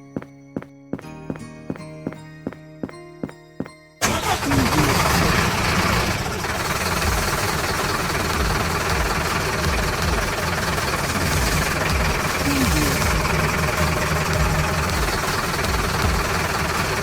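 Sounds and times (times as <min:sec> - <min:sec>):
vehicle engine running: 0:04.0 - 0:17.0.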